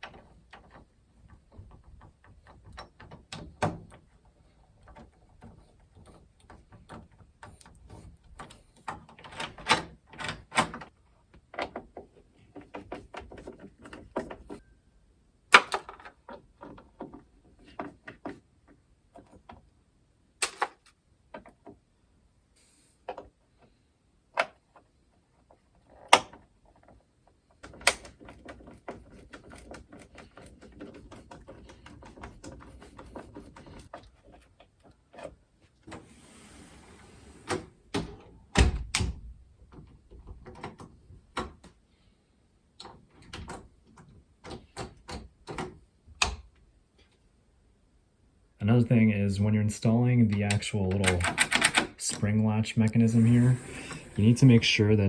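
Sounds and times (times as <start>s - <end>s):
metal door latch clicks and knocks: 8.4s - 10.9s, 37.9s - 41.7s, 50.5s - 52.0s.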